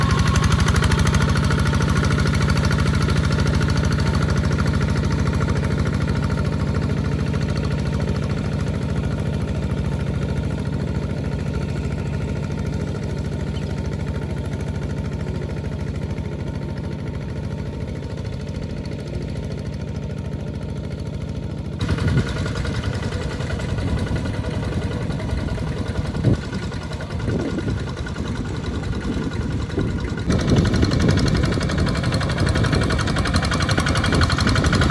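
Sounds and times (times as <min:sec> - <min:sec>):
walking tractor engine running: 0:00.0 - 0:34.9
engine knocks: 0:21.8 - 0:34.9.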